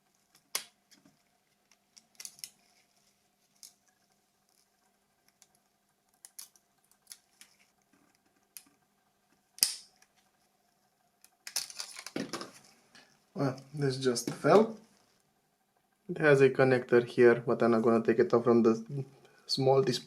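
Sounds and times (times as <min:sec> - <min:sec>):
sharp plastic snap: 0:09.6 - 0:09.9.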